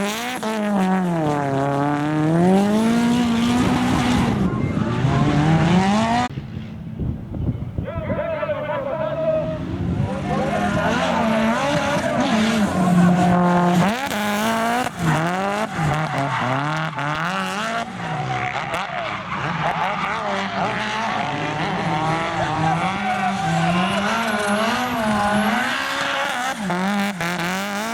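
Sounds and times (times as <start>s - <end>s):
car engine revving hard: 0.0s - 6.3s, 9.7s - 27.9s.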